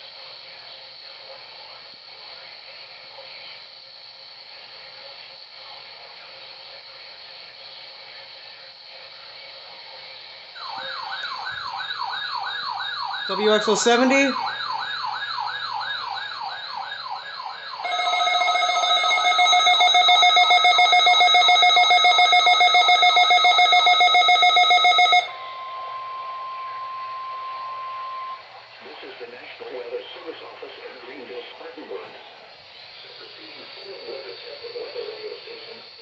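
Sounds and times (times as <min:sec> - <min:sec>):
electronic siren alarm wailing: 0:10.6 - 0:28.7
steady warning alarm tone: 0:10.6 - 0:28.8
pulsing chord of steady tones: 0:17.8 - 0:28.7.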